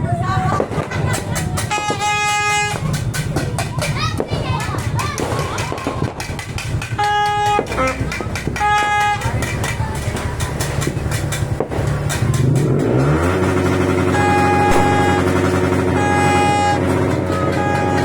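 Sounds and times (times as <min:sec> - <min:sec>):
horn toots: 0:01.6 - 0:03.1, 0:07.0 - 0:09.6, 0:13.6 - 0:18.0
motorcycle engine revving: 0:06.7 - 0:18.0.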